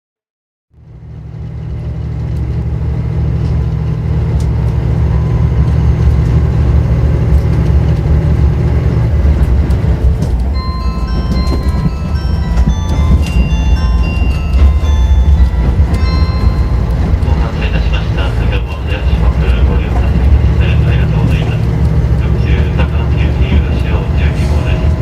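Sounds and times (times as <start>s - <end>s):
low rumble of train engines: 0.8s - 25.0s
bell-like onboard chime: 5.0s - 6.8s, 10.4s - 20.2s.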